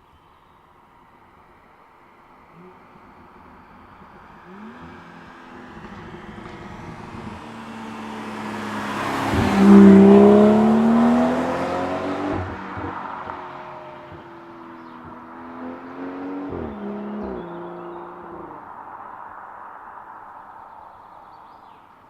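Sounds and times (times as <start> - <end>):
car engine accelerating past: 2.5 - 20.3
exhaust crack: 3.5 - 15.4.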